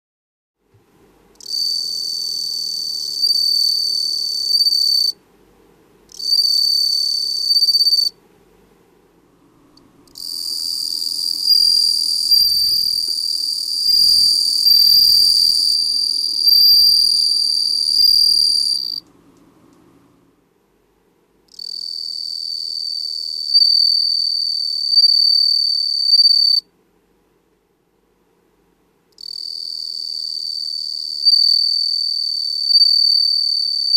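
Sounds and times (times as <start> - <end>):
cricket ringing trill: 1.4 - 5.2, 6.1 - 8.2, 10.1 - 19.0, 21.5 - 26.7, 29.2 - 33.9.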